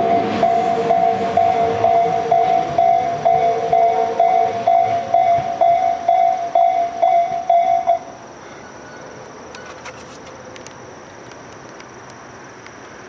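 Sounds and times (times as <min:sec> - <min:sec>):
level-crossing electronic bell: 0:00.0 - 0:08.1
low outdoor hiss: 0:00.0 - 0:13.0.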